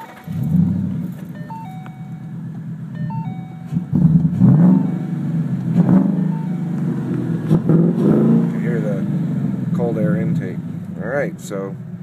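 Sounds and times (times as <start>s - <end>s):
car engine idling and revving: 0.0s - 12.0s
door warning chime: 1.3s - 3.9s, 4.6s - 5.4s, 6.2s - 7.2s.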